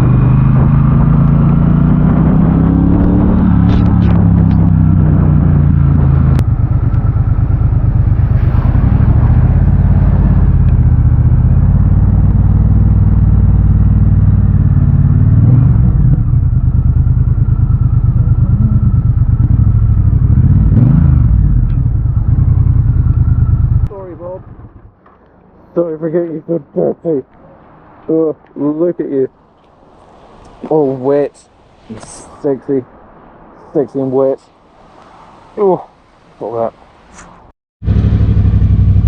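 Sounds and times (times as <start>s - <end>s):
motorcycle engine running at low revs: 0.0s - 25.0s, 37.8s - 39.0s.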